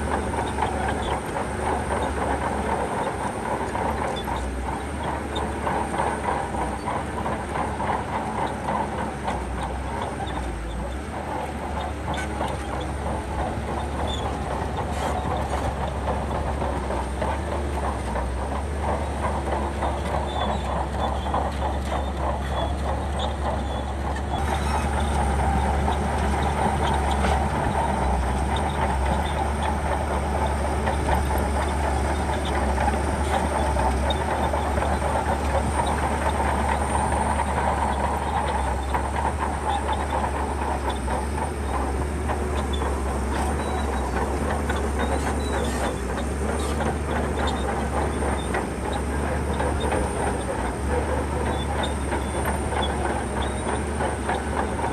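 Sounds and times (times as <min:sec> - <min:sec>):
diesel engine running under load: 0:00.0 - 0:54.9
steel tracks clanking: 0:00.0 - 0:54.9.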